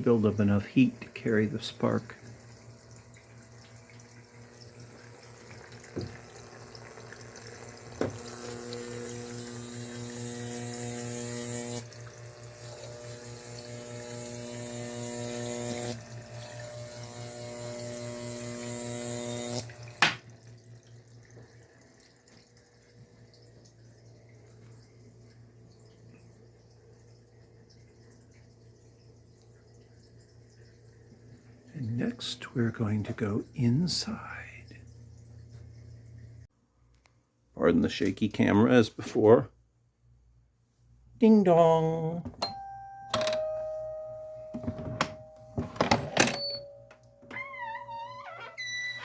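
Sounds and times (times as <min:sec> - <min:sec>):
high-voltage arc buzzing and crackling: 0:04.4 - 0:20.3.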